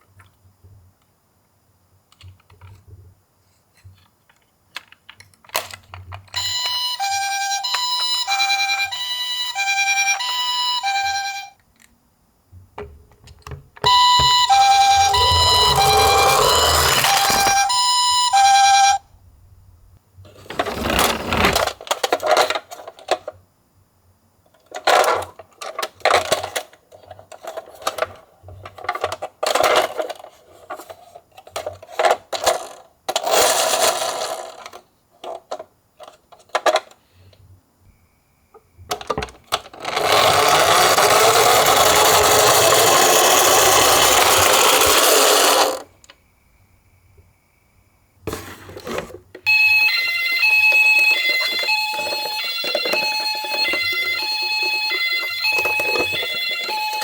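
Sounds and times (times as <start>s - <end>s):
toy car clicks and rattles: 4.3s - 6.8s, 14.8s - 17.8s, 20.6s - 23.4s, 24.5s - 37.0s, 38.9s - 45.9s, 50.4s - 57.0s.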